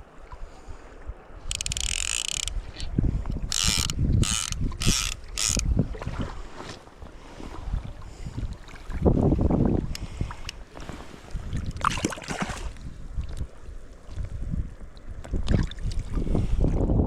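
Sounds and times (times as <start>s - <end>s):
fly reel ratchet buzzing: 1.5s - 2.8s, 3.5s - 5.6s.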